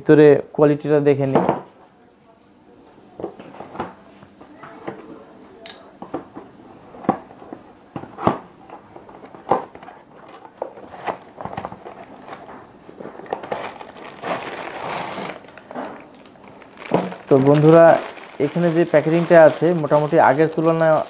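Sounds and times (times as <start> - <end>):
packaging crinkling: 9.0 - 21.0.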